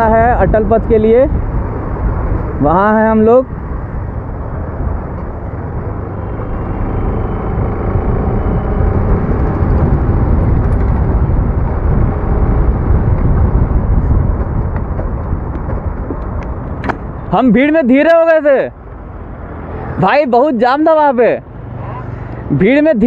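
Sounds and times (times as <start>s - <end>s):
wind rushing over microphone: 0.0s - 23.0s
motorcycle engine: 1.3s - 17.5s.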